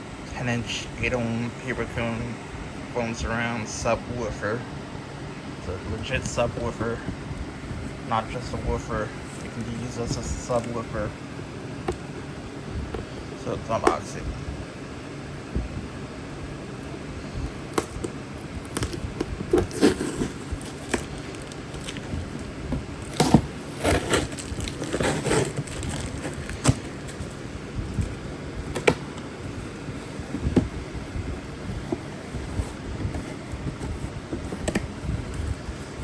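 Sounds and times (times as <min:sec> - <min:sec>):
packaging rustling and scraping: 0:05.7 - 0:11.1, 0:17.5 - 0:36.0.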